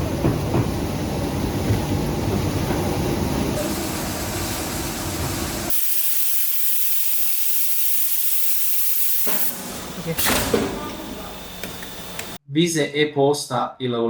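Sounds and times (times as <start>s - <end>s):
slitting machine rumble: 9.2s - 12.4s.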